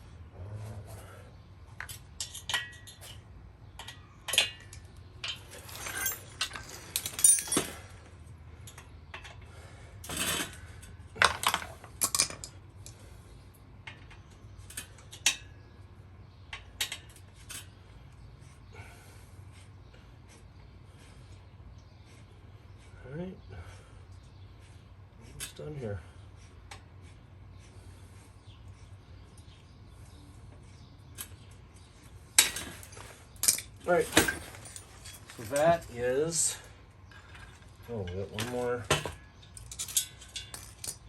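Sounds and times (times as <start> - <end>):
metal tools clinking and rattling: 1.7 - 13.0, 32.3 - 41.0.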